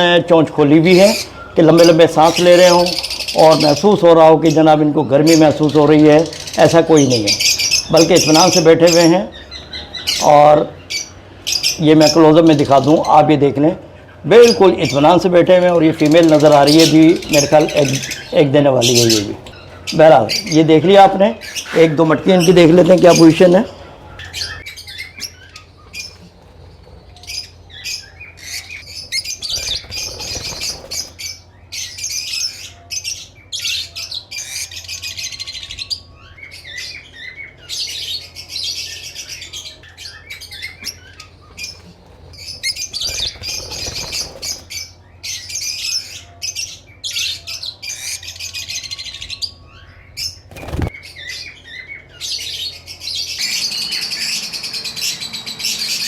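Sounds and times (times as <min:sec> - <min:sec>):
parrots chirping and squawking: 0:00.0 - 0:56.0
steady low hum: 0:23.4 - 0:56.0.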